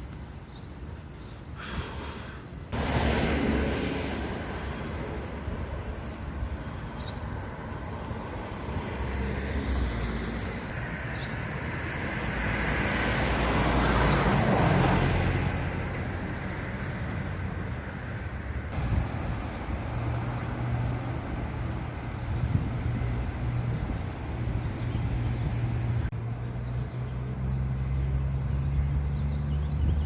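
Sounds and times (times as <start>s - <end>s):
cars passing: 2.5s - 30.0s
vehicle passing by: 2.7s - 30.0s.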